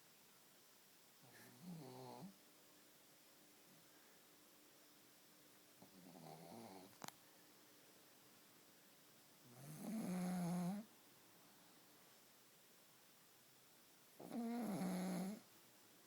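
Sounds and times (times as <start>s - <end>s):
dog snoring: 1.2s - 2.4s, 5.8s - 7.0s, 9.4s - 10.9s, 14.2s - 15.5s.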